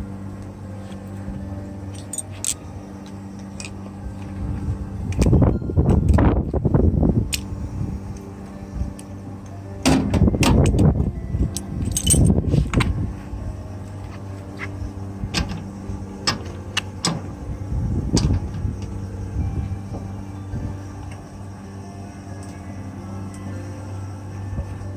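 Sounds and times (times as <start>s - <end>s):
low hum: 0.0s - 24.9s
metallic clinks and clattering: 1.9s - 2.6s, 11.5s - 12.4s.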